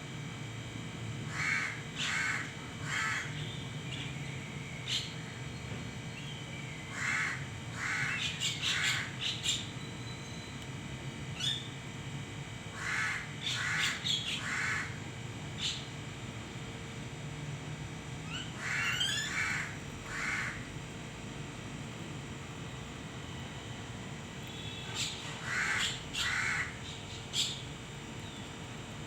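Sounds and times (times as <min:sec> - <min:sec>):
crow cawing: 0:01.3 - 0:03.5, 0:06.9 - 0:09.4, 0:12.7 - 0:15.0, 0:18.3 - 0:20.7, 0:24.5 - 0:27.6
small birds chirping: 0:02.9 - 0:10.6, 0:11.4 - 0:11.8, 0:15.6 - 0:16.0, 0:24.4 - 0:28.8.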